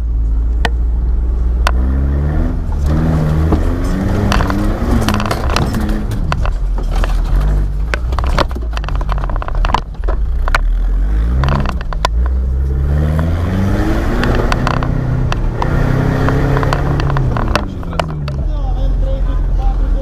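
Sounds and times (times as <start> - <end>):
off-road engine revving: 0.0 - 20.0
vehicle knocks and clatter: 2.6 - 12.5, 13.2 - 18.8.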